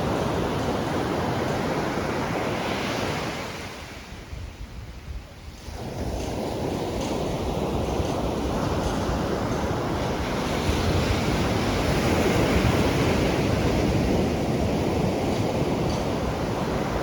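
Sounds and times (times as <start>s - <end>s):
sea surf breaking: 5.4s - 17.0s.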